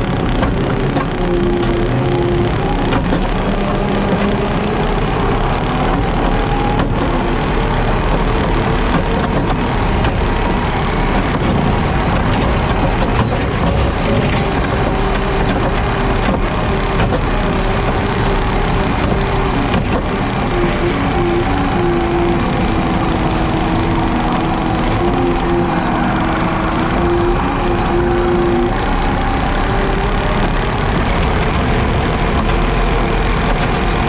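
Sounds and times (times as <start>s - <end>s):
diesel engine running under load: 0.0s - 34.0s
rotary cutter mowing: 0.0s - 34.0s.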